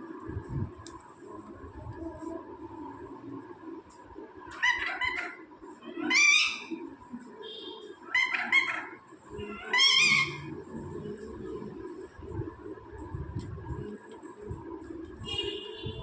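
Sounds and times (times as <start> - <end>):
parrot squawking: 4.5 - 6.8, 8.0 - 10.5.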